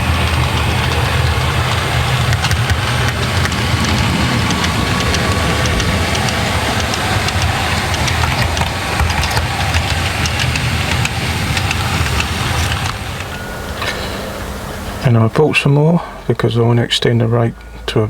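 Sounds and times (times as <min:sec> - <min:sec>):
model train engine drone: 0:00.0 - 0:18.0
wheels clicking over rail joints: 0:00.0 - 0:18.0.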